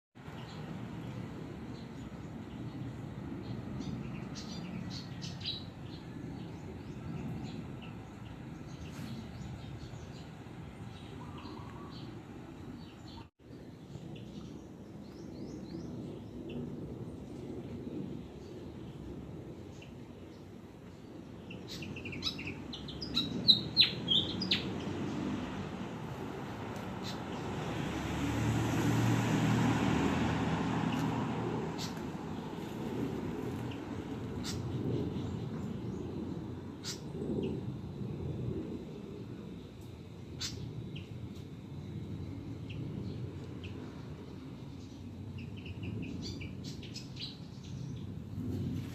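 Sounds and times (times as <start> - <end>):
bird chirping: 0.3 - 16.6, 21.3 - 25.2
bird singing whistled notes: 21.6 - 24.7.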